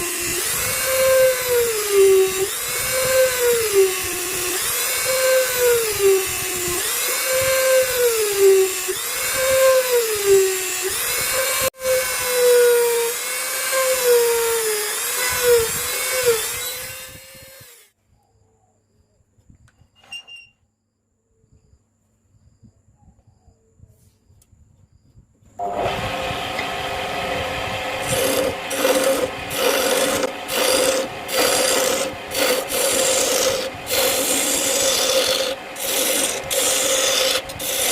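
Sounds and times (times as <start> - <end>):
wood lathe motor whining: 0.0 - 17.9, 25.6 - 37.9.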